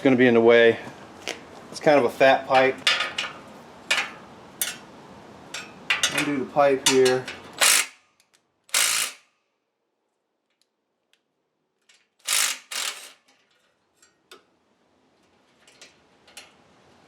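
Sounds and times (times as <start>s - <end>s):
loud noisy tool bursts: 7.6s - 8.0s, 8.7s - 9.3s, 12.2s - 13.2s.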